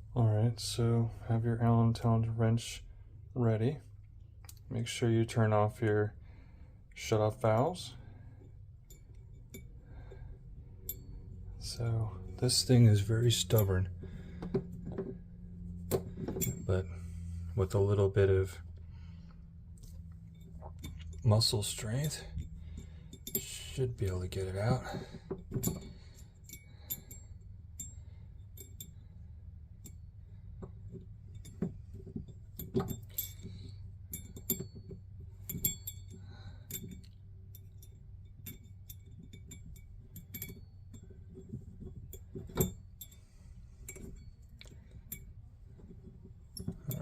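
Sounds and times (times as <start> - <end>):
low steady hum: 0.0 - 47.0.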